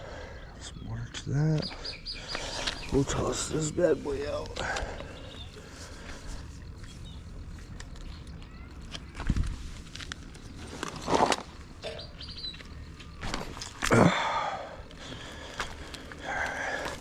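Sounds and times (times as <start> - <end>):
faint bird chirps: 0.2 - 9.5, 10.2 - 13.5.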